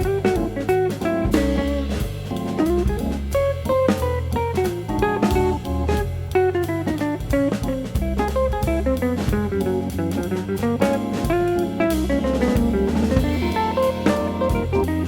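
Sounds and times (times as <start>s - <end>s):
drum kit beat: 0.0s - 15.0s
plucked guitar: 3.4s - 15.0s.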